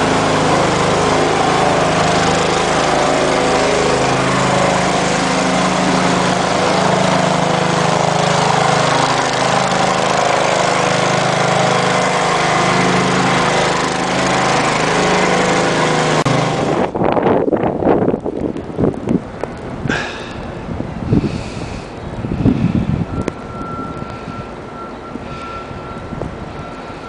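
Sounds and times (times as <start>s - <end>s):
small engine running: 0.0s - 17.0s, 19.5s - 27.0s
wind buffeting microphone: 16.2s - 27.0s.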